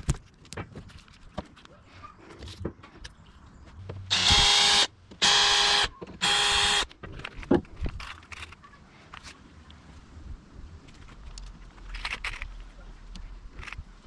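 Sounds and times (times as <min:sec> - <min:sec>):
power drill whining: 0:04.1 - 0:06.9.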